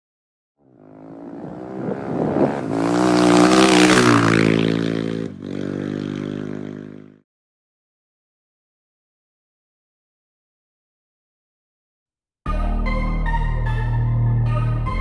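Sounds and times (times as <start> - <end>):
motorcycle engine revving: 0.6 - 7.2.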